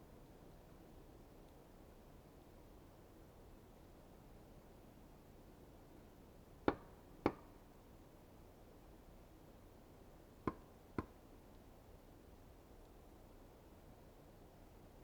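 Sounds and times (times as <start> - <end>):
tool knocking on wood: 6.7 - 7.4.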